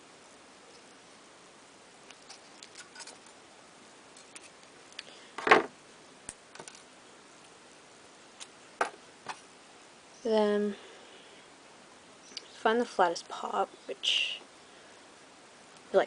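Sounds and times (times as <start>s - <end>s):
scraping rustle: 2.2s - 3.4s.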